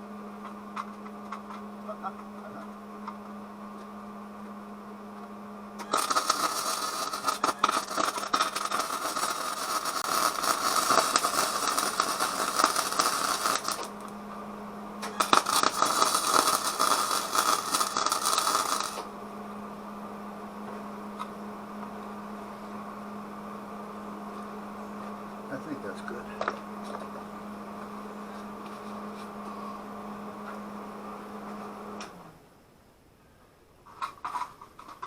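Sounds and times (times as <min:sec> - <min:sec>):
crackling welding arc: 0:05.8 - 0:14.2, 0:15.0 - 0:19.1.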